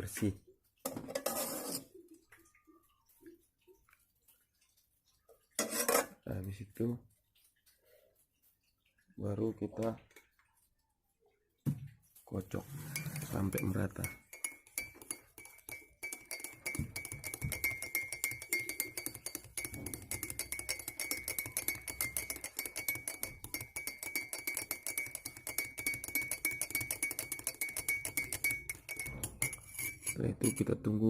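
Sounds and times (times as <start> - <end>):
spoon clinking against glass: 12.6 - 30.8.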